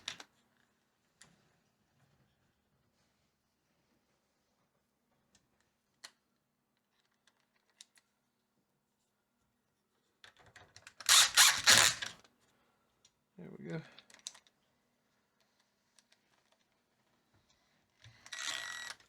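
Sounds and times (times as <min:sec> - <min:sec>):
cordless drill driving a screw: 0:11.0 - 0:12.1, 0:18.2 - 0:19.0.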